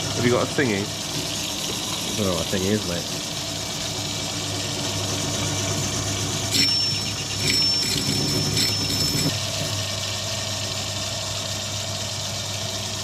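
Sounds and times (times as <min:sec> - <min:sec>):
lathe motor running: 0:00.0 - 0:13.0
cutting tool squealing: 0:06.5 - 0:09.8.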